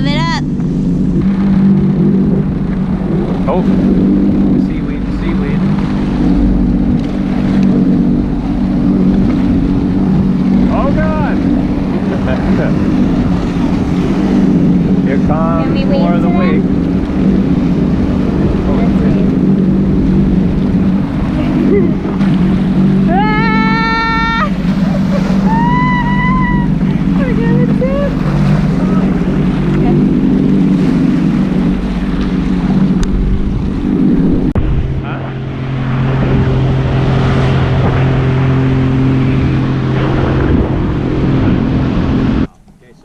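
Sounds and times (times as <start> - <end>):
jet ski engine running: 0.0 - 43.0
wind and water rushing: 0.0 - 43.0
person whooping: 23.2 - 24.5, 25.4 - 26.8.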